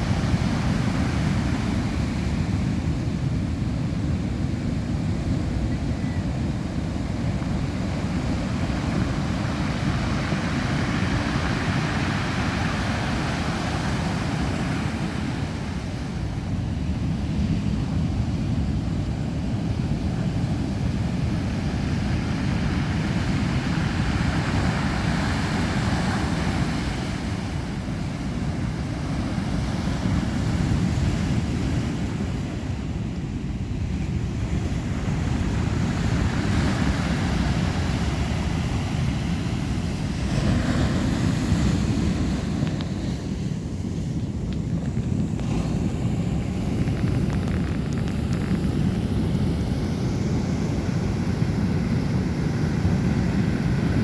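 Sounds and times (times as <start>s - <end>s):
wind buffeting microphone: 0.0s - 54.0s
waves breaking: 34.9s - 54.0s.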